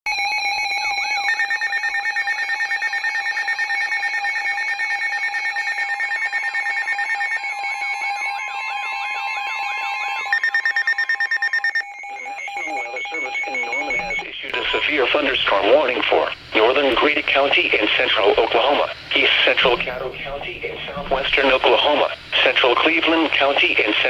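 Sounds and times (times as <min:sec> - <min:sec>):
steady electronic alarm tones: 0:00.1 - 0:24.0
fast beeping: 0:10.3 - 0:24.0
rapid pulsing tone: 0:13.4 - 0:24.0.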